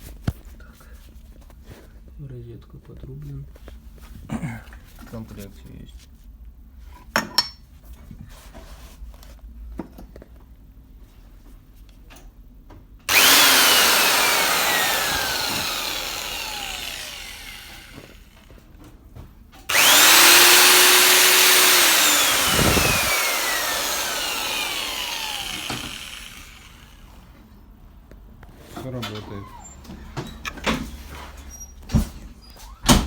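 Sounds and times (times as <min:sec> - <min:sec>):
electric drill motor whining: 0:13.1 - 0:18.5, 0:19.7 - 0:27.3.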